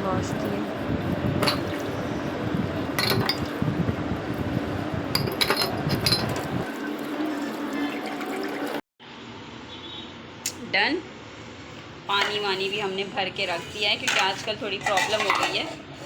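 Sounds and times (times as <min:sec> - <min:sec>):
running tap water: 0:01.0 - 0:08.8
dishes clinking together: 0:01.4 - 0:01.9, 0:03.0 - 0:03.5, 0:14.1 - 0:15.8.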